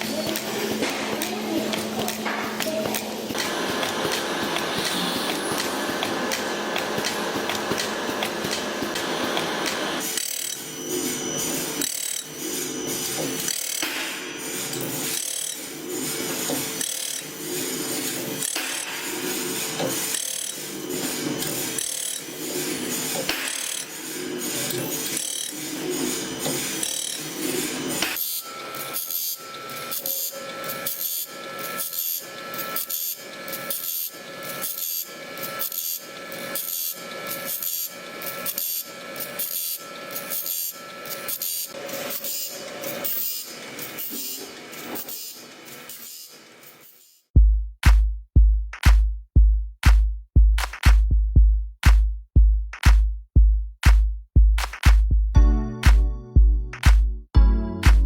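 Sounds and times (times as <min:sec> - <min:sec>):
saw-blade machine rasping: 0:00.0 - 0:47.2.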